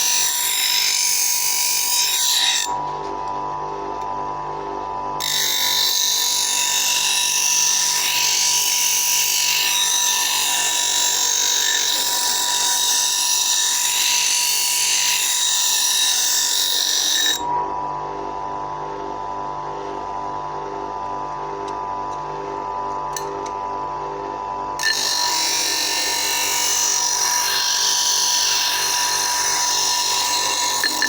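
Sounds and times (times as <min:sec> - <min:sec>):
bench grinder humming: 0:00.0 - 0:31.0
blade grinding against wheel: 0:24.8 - 0:31.0.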